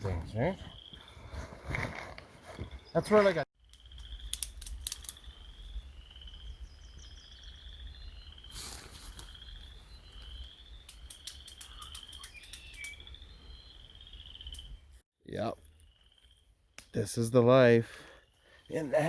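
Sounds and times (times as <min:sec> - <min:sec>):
frogs trilling: 0:03.6 - 0:14.8, 0:15.5 - 0:19.0
sharp clicks: 0:03.7 - 0:05.2, 0:10.8 - 0:13.1
rustle: 0:08.4 - 0:10.3.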